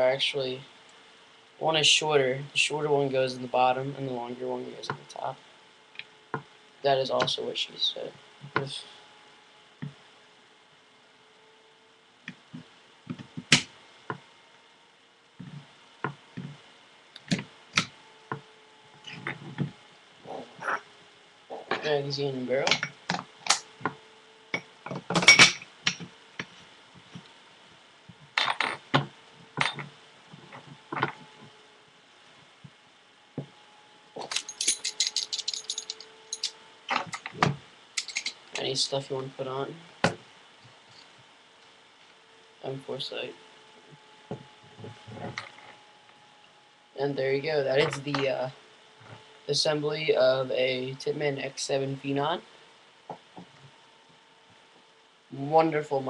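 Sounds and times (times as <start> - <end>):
sharp clicks and rattles: 34.2 - 38.7.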